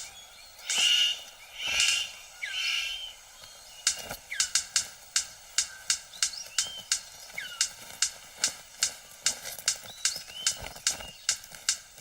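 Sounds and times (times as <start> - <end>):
harsh rasping bird calls: 0.0 - 12.0
sharp bird clicks: 0.0 - 12.0.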